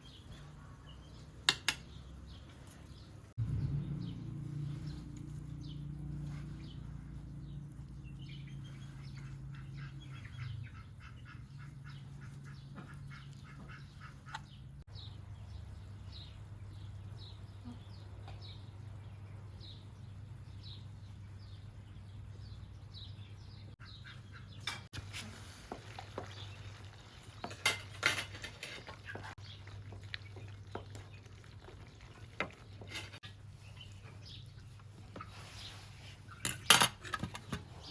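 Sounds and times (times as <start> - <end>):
poultry calling: 8.5 - 14.5
dishes clinking: 27.4 - 29.0.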